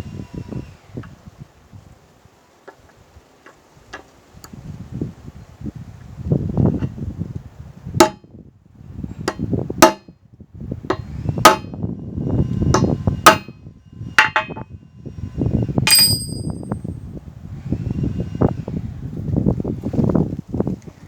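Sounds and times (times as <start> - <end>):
hammer striking metal punch: 9.3 - 10.1, 10.9 - 11.7, 12.8 - 13.5, 14.2 - 14.6, 15.9 - 16.8.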